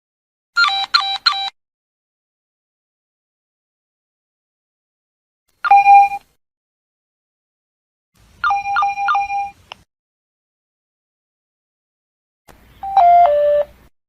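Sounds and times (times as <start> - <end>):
mobile phone alert beeps: 5.6 - 6.2, 8.4 - 9.6, 12.8 - 13.7.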